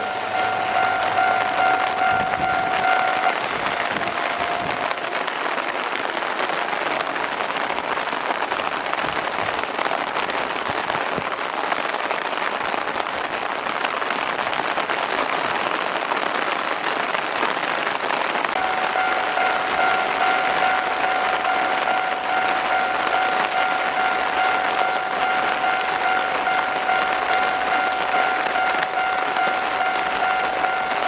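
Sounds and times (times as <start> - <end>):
train wheels rushing on rails: 0.0 - 8.1, 18.4 - 31.0.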